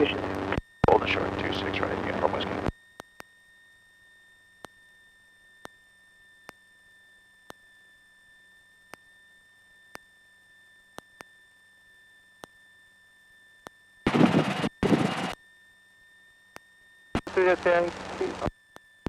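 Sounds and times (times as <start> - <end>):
faint electrical whine: 0.0 - 19.0
loud burst of radio static: 14.1 - 15.3, 17.2 - 18.5.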